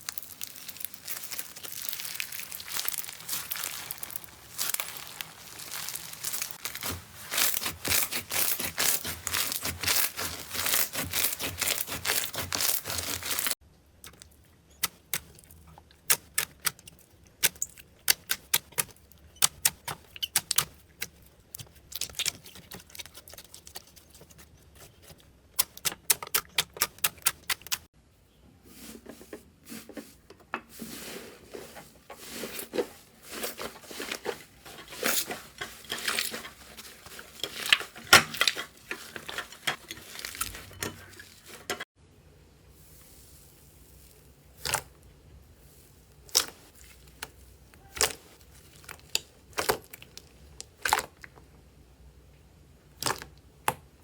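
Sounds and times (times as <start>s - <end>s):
slime squishing and crackling: 0.0s - 27.9s, 33.3s - 41.8s, 44.1s - 45.1s, 46.1s - 51.4s, 53.0s - 53.8s
slime clicking and popping: 14.0s - 23.6s, 25.6s - 27.8s.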